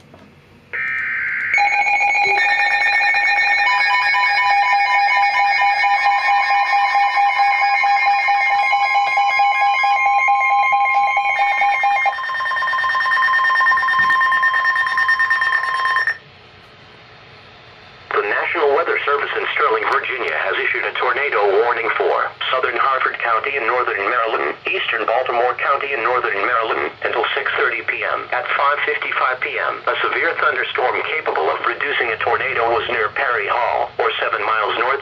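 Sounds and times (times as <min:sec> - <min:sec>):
emergency alert tones: 0:00.7 - 0:16.3.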